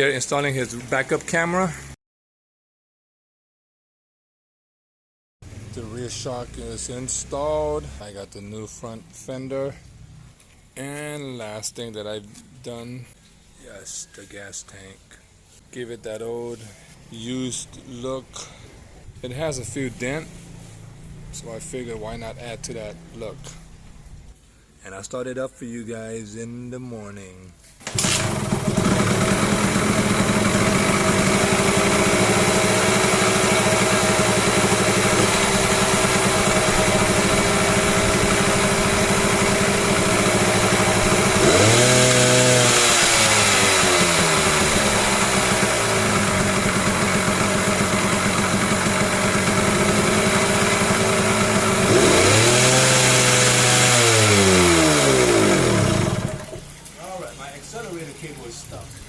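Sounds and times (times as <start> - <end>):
two-stroke motorcycle engine revving: 27.9 - 56.7.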